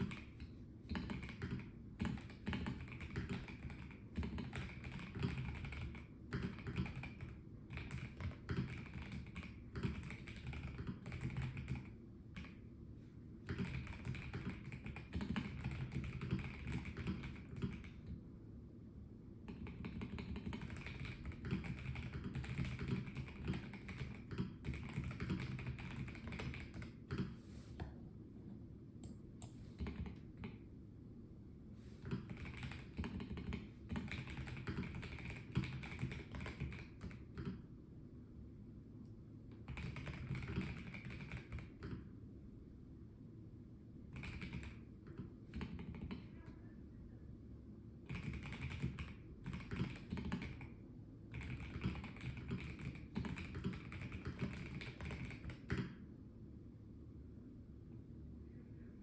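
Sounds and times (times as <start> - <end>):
typing on mechanical keyboard: 0.0 - 12.6, 13.5 - 18.2, 19.5 - 27.4, 29.8 - 30.6, 32.0 - 37.6, 39.5 - 42.0, 44.1 - 46.3, 48.1 - 56.0.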